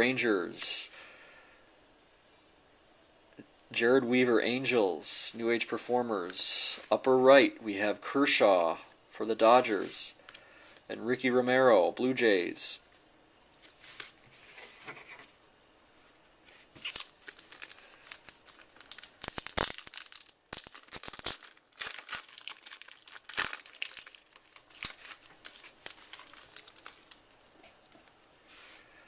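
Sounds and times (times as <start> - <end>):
wrapper tearing and crinkling: 16.8 - 27.6.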